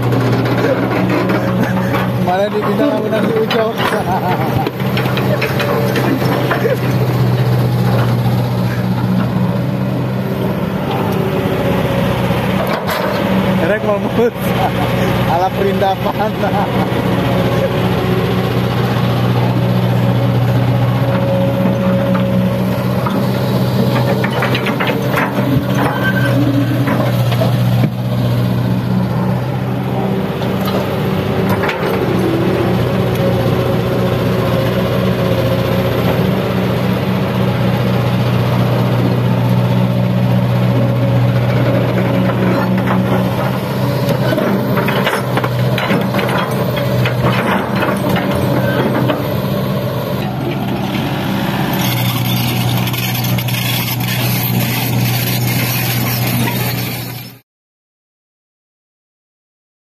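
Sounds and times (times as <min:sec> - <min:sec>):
heavy diesel engine running: 0:00.0 - 0:57.4
metal clanks and knocks: 0:00.2 - 0:08.2, 0:22.9 - 0:28.0, 0:30.6 - 0:32.2, 0:41.9 - 0:49.5.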